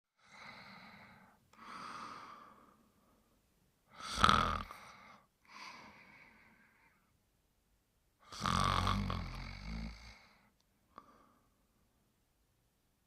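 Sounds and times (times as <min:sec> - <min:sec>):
person snoring: 0:03.9 - 0:05.2, 0:08.2 - 0:10.4.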